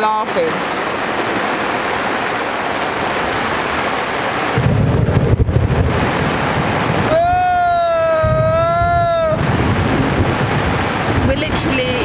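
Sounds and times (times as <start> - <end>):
heavy rain falling: 0.0 - 12.0
low rumble of thunder: 4.6 - 12.0.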